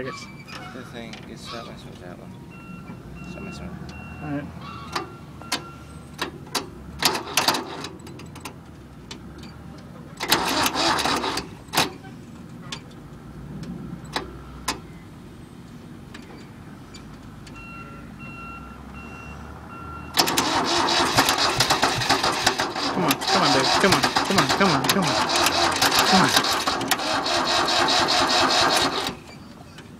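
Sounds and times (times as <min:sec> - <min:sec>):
tractor starter motor cranking: 0:06.2 - 0:08.5, 0:10.2 - 0:11.9, 0:20.2 - 0:29.8.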